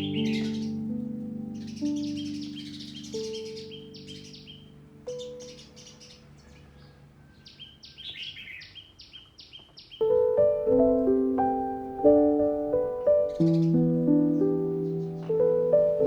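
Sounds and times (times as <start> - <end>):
light background music: 0.0 - 6.7, 10.0 - 16.0
small bird chirping: 0.0 - 10.7, 11.6 - 16.0.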